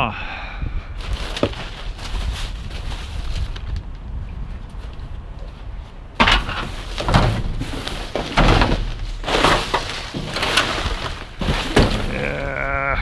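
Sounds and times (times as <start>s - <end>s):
rustling clatter: 1.0s - 3.9s, 6.2s - 12.6s
debris knocking in dumpster: 6.2s - 12.6s.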